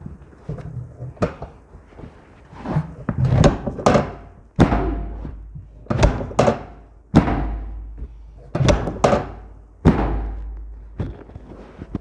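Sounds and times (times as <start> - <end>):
thuds on a treatment table: 3.4 - 10.6.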